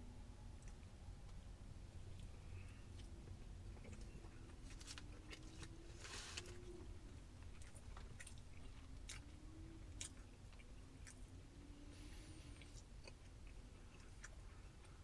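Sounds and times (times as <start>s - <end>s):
close-up chewing: 0.5s - 15.0s.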